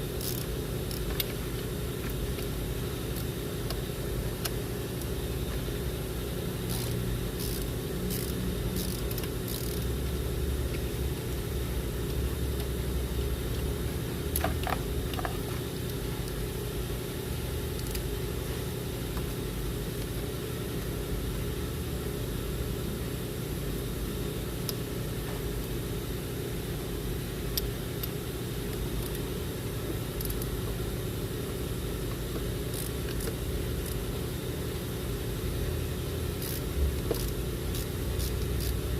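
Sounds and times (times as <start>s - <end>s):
engine-like hum: 0.0s - 23.1s, 32.0s - 38.9s.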